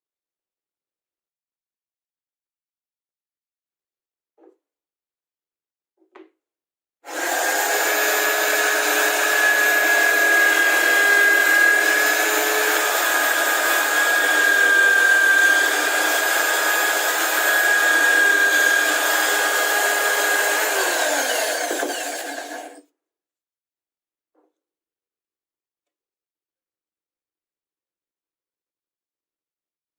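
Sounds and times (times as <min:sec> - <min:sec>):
electric power tool whining: 0:07.1 - 0:22.8.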